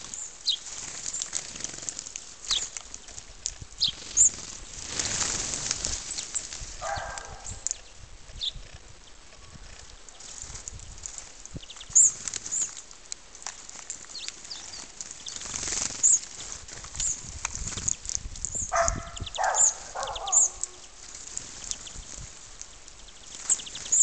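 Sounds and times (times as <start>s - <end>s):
high bird chirps: 18.5s - 21.0s
lower bird call: 18.6s - 21.0s.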